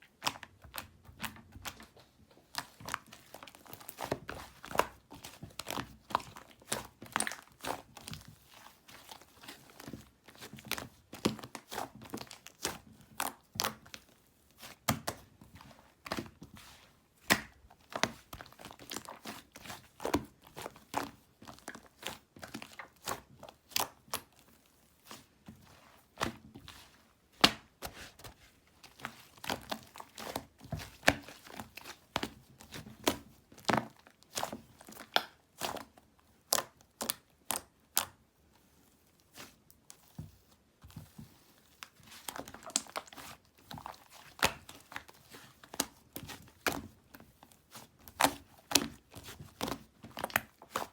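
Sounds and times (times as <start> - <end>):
hands squishing slime: 0.0 - 50.9.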